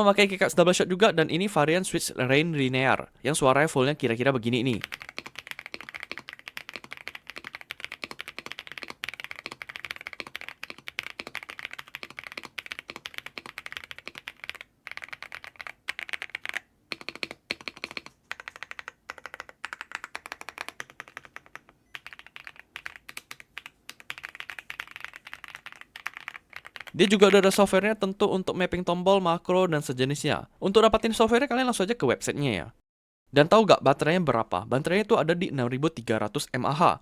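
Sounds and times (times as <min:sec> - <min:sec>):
mechanical keyboard typing: 0:04.7 - 0:27.5.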